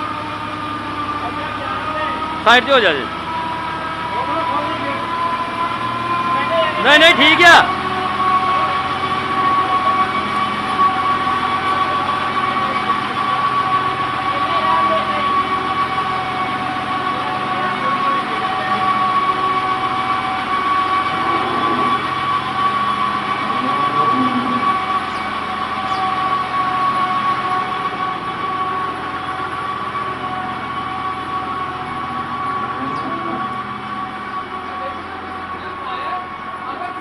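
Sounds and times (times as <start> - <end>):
tractor feed mixer running: 0.0 - 37.0
high-pitched whine: 17.2 - 26.8.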